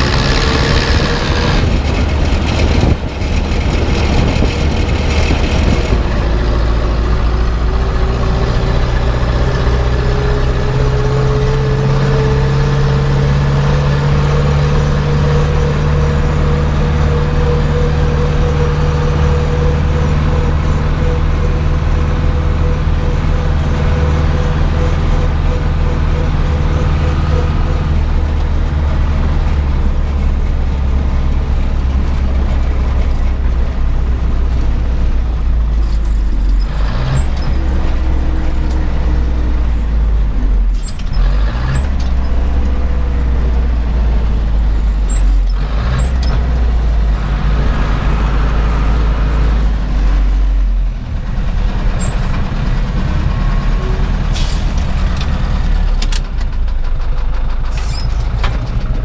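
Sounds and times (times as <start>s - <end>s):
knocks and rattles: 0.0s - 8.6s
tractor diesel engine running: 0.0s - 59.0s.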